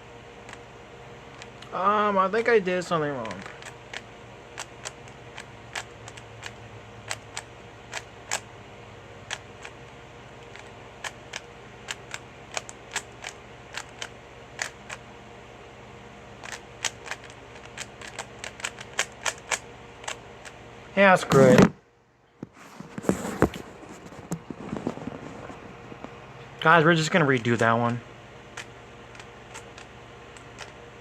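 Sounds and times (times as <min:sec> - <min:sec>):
puzzle cube layers clicking: 0:03.2 - 0:08.4, 0:09.3 - 0:09.8, 0:10.4 - 0:15.0, 0:16.4 - 0:20.2, 0:28.6 - 0:30.8.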